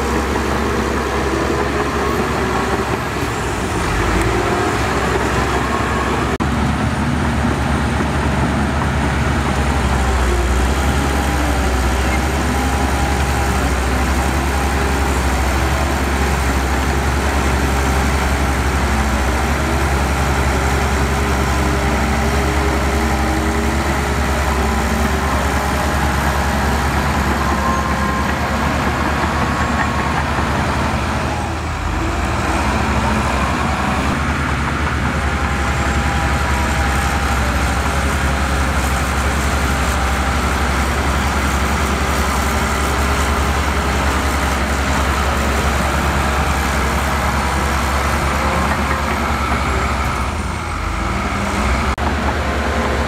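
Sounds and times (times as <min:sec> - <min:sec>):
diesel machinery engine drone: 0:00.0 - 0:53.0.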